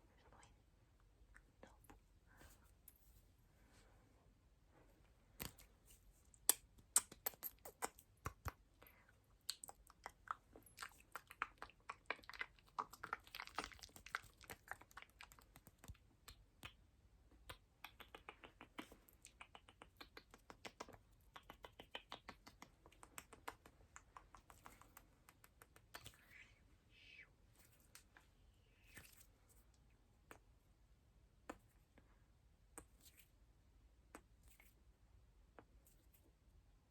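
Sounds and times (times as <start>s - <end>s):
wet tongue clicks and lip pops: 6.4s - 8.6s, 9.4s - 16.8s, 17.4s - 26.3s.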